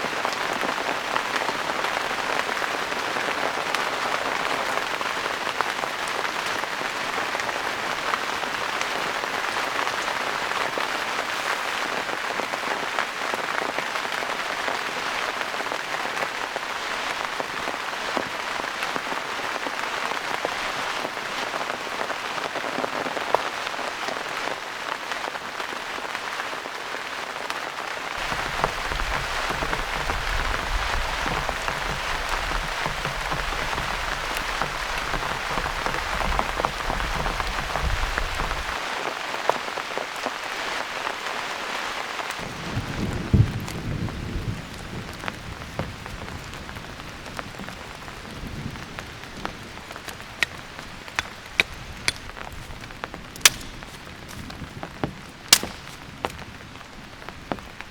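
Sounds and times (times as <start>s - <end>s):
heavy rain falling: 0.0s - 57.9s.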